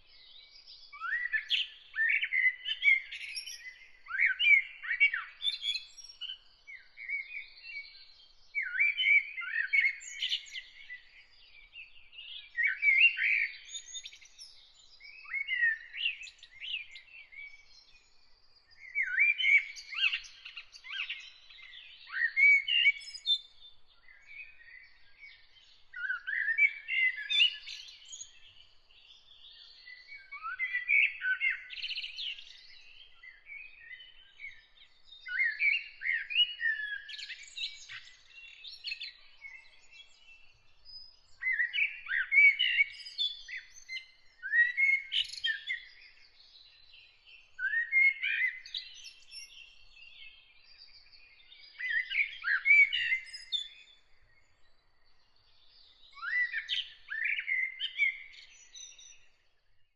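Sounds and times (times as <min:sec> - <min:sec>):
songbird singing: 0:00.0 - 0:59.9.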